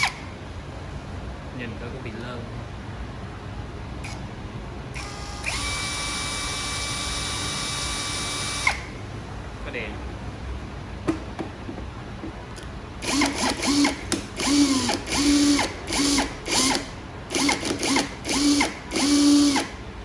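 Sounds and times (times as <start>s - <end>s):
cordless drill motor whirring: 0.0s - 0.3s, 4.9s - 9.0s, 13.0s - 19.8s.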